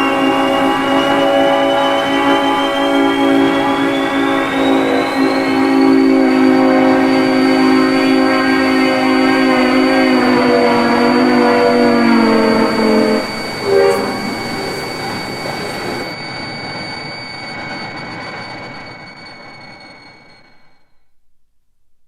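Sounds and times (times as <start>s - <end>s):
horn-like blare: 0.0s - 16.2s
rushing rumble: 0.0s - 16.2s.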